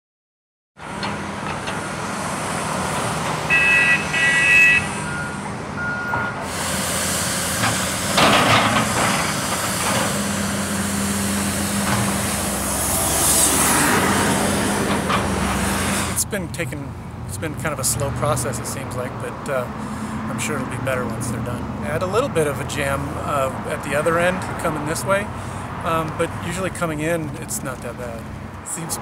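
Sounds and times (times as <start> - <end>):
heavy truck engine humming: 0.8 - 29.0
vehicles passing: 0.8 - 29.0
short high beeps: 3.5 - 6.4.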